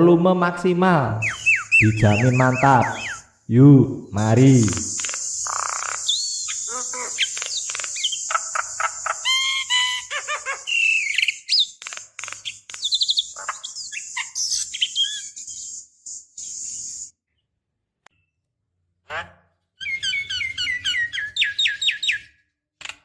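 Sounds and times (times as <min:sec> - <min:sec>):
bird singing varied whistles: 0:01.2 - 0:03.3, 0:04.6 - 0:10.1, 0:10.7 - 0:11.8, 0:12.5 - 0:17.1
high-pitched insect drone: 0:04.1 - 0:17.1.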